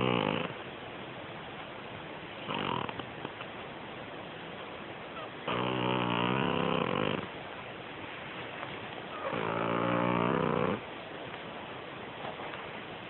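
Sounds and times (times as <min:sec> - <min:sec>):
cat snoring: 0:00.0 - 0:00.6, 0:02.4 - 0:03.1, 0:05.2 - 0:07.3, 0:09.1 - 0:10.8.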